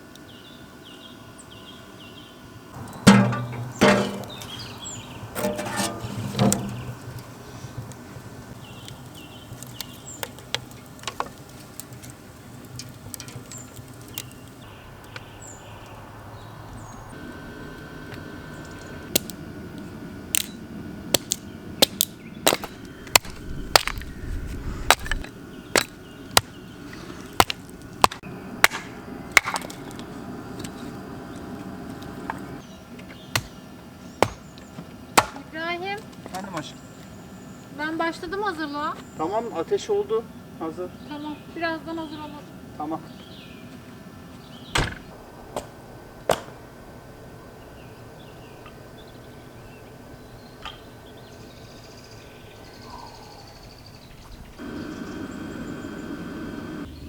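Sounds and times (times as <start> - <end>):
chopping knocks: 27.4 - 29.7.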